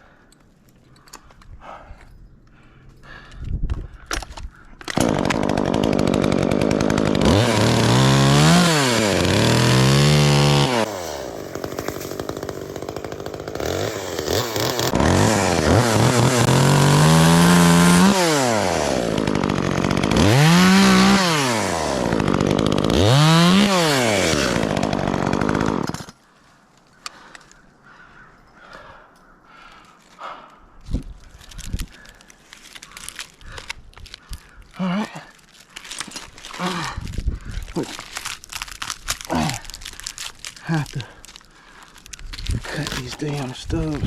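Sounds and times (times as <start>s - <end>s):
chainsaw revving and cutting: 4.9s - 26.2s, 35.8s - 44.0s.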